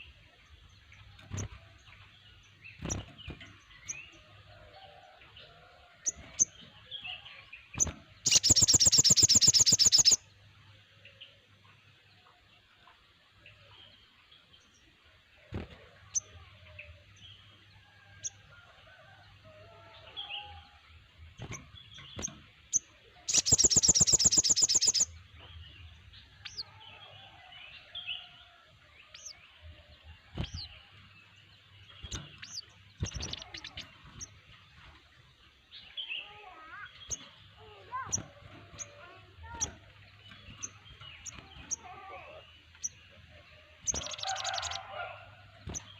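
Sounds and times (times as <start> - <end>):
songbirds chirping and whistling: 0.0 - 45.9
bird rapid trill: 7.8 - 10.2, 23.3 - 25.1, 32.1 - 33.9, 43.9 - 44.9.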